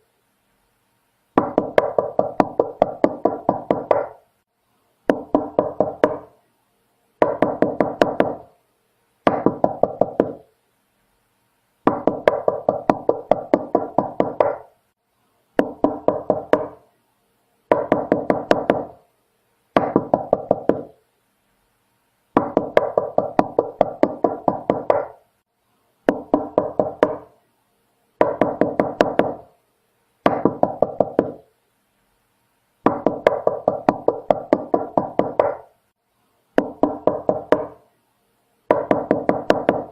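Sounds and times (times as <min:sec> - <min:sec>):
knocking on a door: 0:01.4 - 0:04.2, 0:05.1 - 0:06.3, 0:07.2 - 0:08.5, 0:09.3 - 0:10.4, 0:11.9 - 0:14.6, 0:15.6 - 0:16.8, 0:17.7 - 0:19.0, 0:19.8 - 0:20.9, 0:22.4 - 0:25.1, 0:26.1 - 0:27.3, 0:28.2 - 0:29.5, 0:30.3 - 0:31.4, 0:32.9 - 0:35.7, 0:36.6 - 0:37.8, 0:38.7 - 0:39.9.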